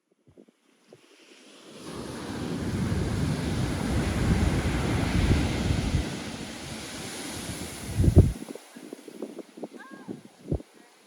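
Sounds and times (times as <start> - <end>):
wave breaking and washing in: 0.6 - 11.0
wind buffeting microphone: 2.2 - 10.9.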